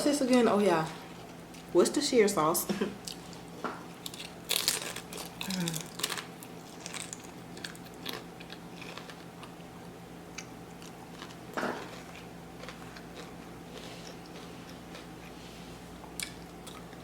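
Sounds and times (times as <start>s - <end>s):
person chewing chips: 3.0s - 17.0s
crunches of chips: 4.0s - 9.6s.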